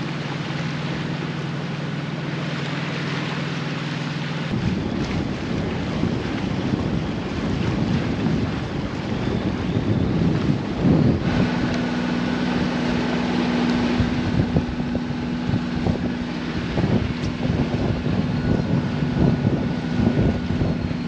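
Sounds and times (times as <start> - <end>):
steady low hum: 0.0 - 21.0
gusty wind buffeting microphone: 4.5 - 21.0.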